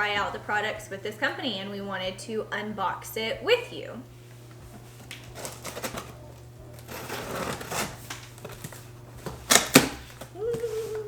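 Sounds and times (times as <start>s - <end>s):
cardboard box rustling and crinkling: 4.8s - 10.9s.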